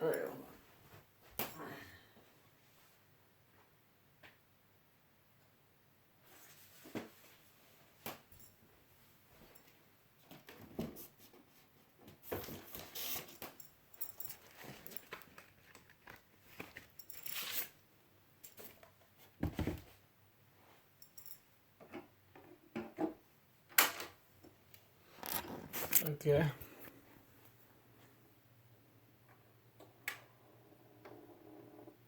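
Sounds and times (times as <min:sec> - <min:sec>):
packaging rustling and scraping: 0:14.2 - 0:17.8, 0:25.1 - 0:26.1.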